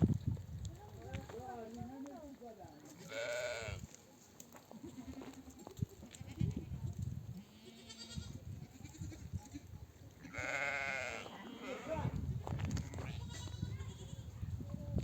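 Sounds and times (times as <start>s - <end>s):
sheep bleating: 3.0s - 3.8s, 7.4s - 12.1s.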